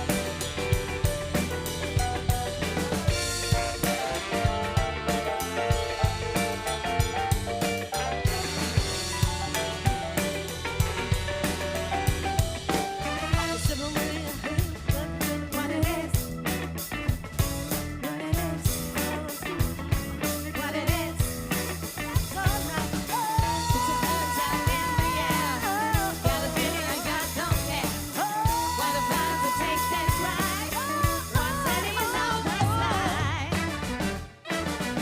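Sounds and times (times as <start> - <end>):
lead line long notes: 0.0 - 13.8
steady drum beat: 0.0 - 17.9, 20.9 - 35.0
funk and soul band playing: 0.0 - 35.0.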